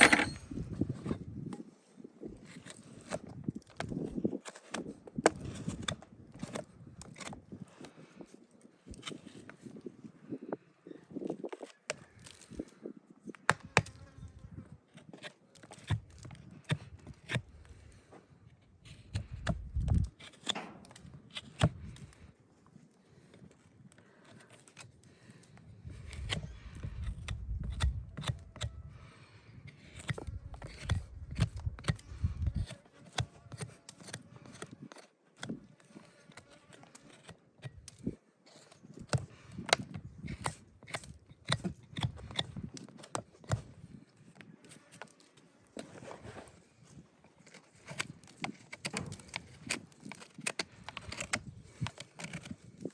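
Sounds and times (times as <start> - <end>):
hoof trimming tools snapping: 2.5 - 7.4, 13.3 - 14.4, 15.0 - 18.0, 18.9 - 22.2, 24.1 - 28.9, 29.6 - 46.0, 47.4 - 52.9.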